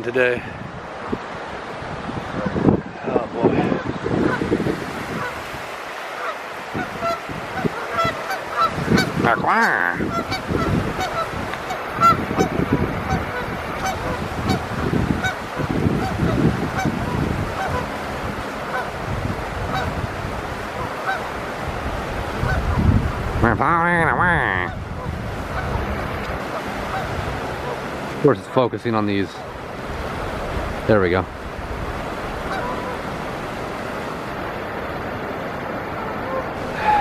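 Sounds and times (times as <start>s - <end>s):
birds calling: 5.1s - 19.0s, 20.6s - 21.4s, 24.6s - 28.6s, 32.0s - 34.4s.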